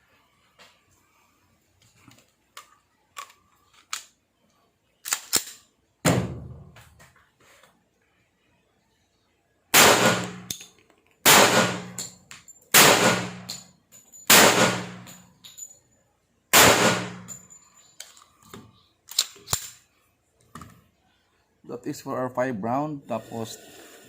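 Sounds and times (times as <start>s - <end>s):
pistol shots: 9.7s - 10.5s, 11.2s - 12.1s, 12.7s - 13.6s, 14.3s - 15.1s, 16.5s - 17.3s.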